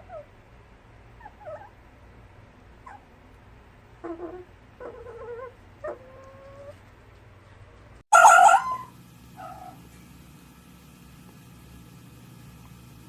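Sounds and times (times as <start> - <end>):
low steady hum: 0.0 - 13.0
fox calling: 8.1 - 9.8.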